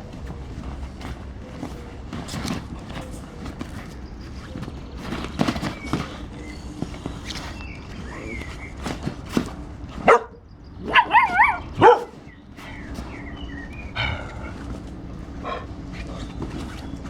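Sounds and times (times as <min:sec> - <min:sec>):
puppies yipping and whining: 0:10.0 - 0:14.8.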